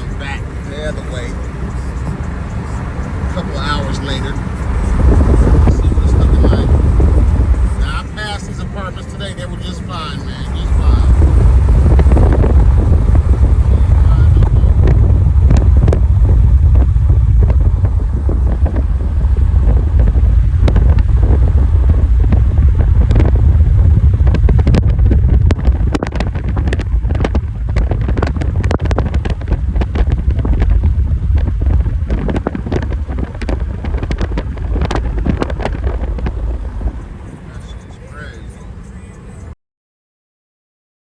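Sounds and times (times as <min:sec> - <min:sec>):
vehicle rumble on road: 0:00.0 - 0:39.6
wind buffeting microphone: 0:00.0 - 0:39.6
sharp crackles: 0:10.4 - 0:39.3.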